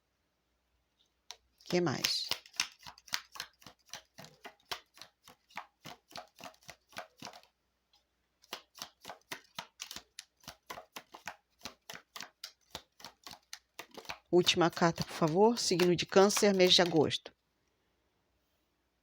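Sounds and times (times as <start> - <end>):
cards being shuffled: 1.3 - 7.5, 8.4 - 17.2.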